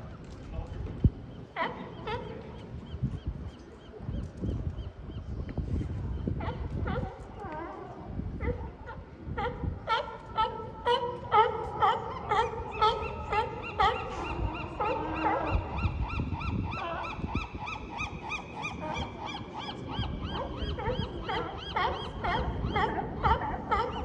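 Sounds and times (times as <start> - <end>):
sea lions barking: 1.5 - 2.7, 6.4 - 24.0.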